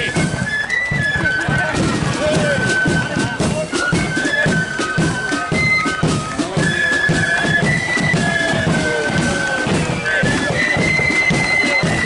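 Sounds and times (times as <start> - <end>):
high flutes playing melody: 0.0 - 12.0.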